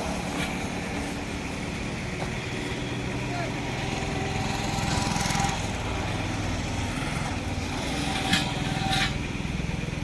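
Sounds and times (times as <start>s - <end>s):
small engine running: 2.7s - 9.6s.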